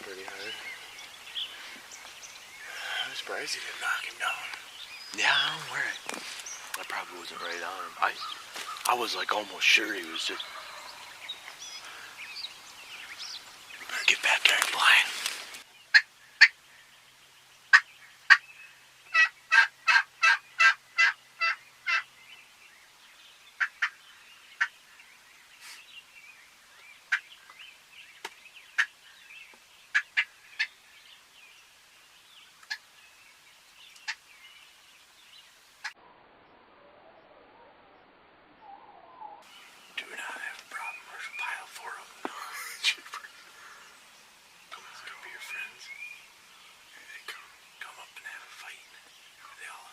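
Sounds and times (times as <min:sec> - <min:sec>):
turkey clucks: 0:19.1 - 0:22.0, 0:40.2 - 0:43.9
turkey yelps: 0:19.1 - 0:22.0.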